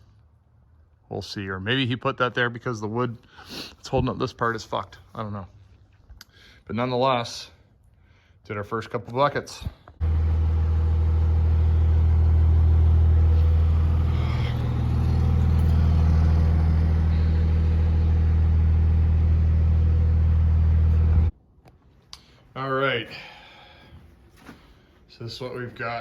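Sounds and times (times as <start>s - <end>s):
tractor engine running under load: 10.0s - 21.3s.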